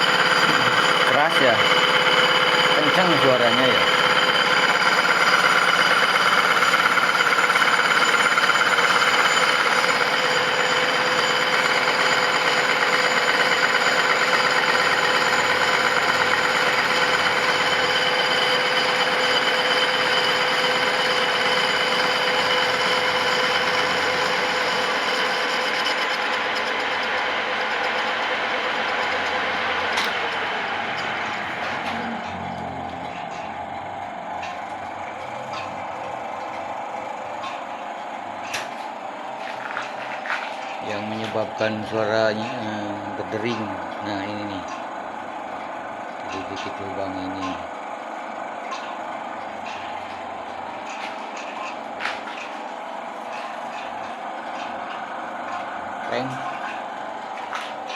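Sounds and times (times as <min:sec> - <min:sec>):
machine ringing with fixed tones: 0:00.0 - 0:33.7.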